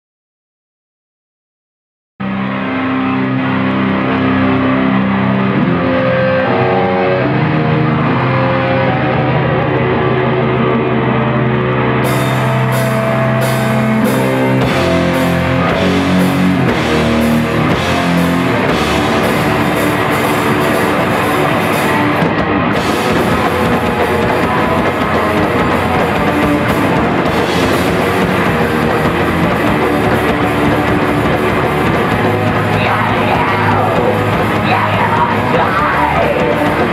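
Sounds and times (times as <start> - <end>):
guitars holding sustained notes: 2.2 - 36.9
live punk band playing: 2.2 - 36.9
drums with crashing cymbals: 12.1 - 36.9.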